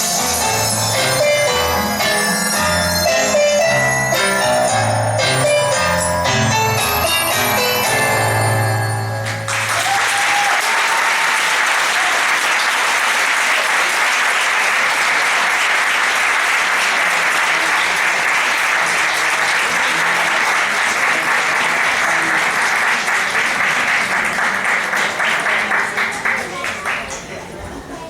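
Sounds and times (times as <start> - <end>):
audience applauding loudly: 9.2 - 27.4.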